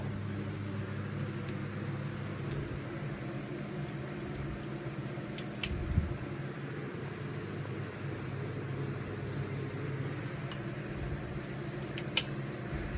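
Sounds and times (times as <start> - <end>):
ceiling fan motor hum: 0.0 - 12.9.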